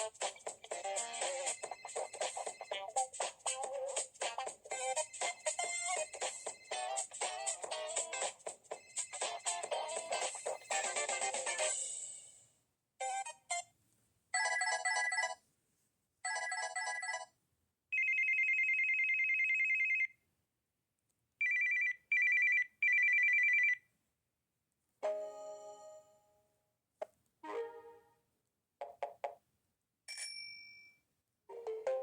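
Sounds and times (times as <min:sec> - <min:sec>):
cell phone ringtones: 0:00.7 - 0:03.2, 0:04.8 - 0:11.7, 0:14.4 - 0:15.4, 0:16.3 - 0:17.3, 0:21.4 - 0:23.8.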